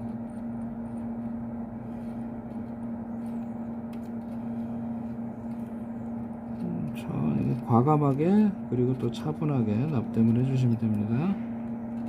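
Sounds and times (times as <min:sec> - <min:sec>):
extractor fan humming: 0:00.0 - 0:12.0.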